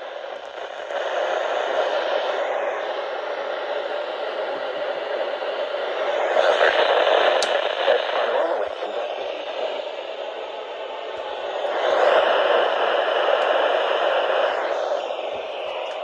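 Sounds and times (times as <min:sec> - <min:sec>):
radio static hiss: 0:00.0 - 0:16.0.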